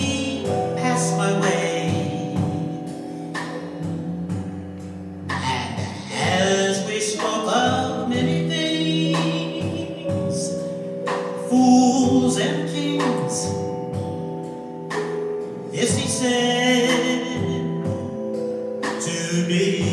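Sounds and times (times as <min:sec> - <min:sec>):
person singing long notes: 0:00.0 - 0:04.4, 0:05.3 - 0:10.7
sustained music chords: 0:00.0 - 0:19.9.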